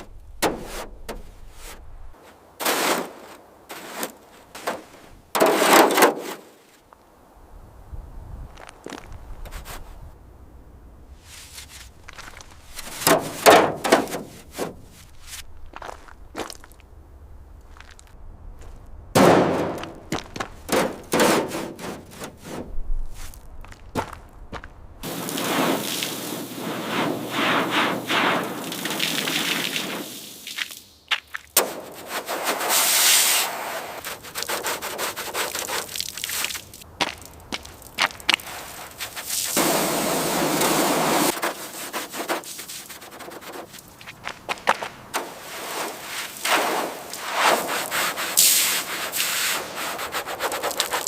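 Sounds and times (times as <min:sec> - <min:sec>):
hand sanding car body: 0:40.2 - 0:43.8.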